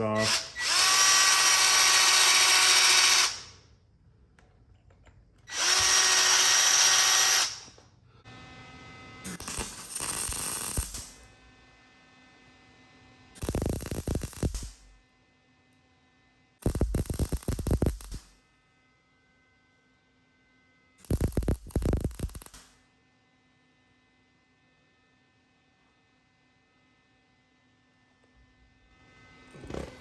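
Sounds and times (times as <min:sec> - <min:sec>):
power drill whining: 0:00.3 - 0:03.5, 0:05.5 - 0:07.8
loud crackling burst: 0:16.6 - 0:18.2.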